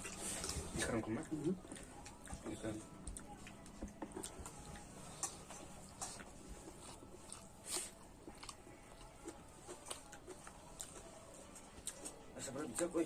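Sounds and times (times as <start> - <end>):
person chewing: 1.5 - 12.9.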